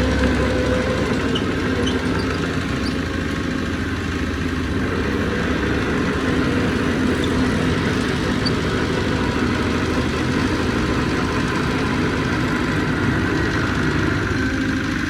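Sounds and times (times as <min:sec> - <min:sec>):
heavy diesel engine running: 0:00.0 - 0:15.0.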